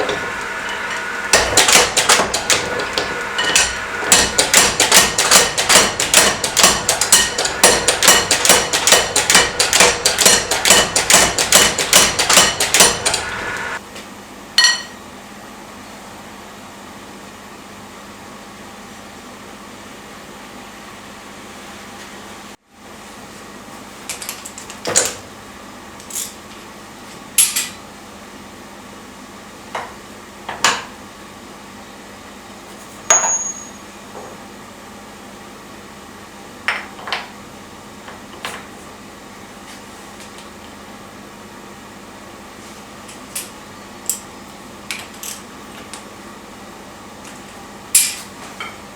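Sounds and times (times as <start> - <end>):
hammer blows on anvil: 0.0 - 13.8.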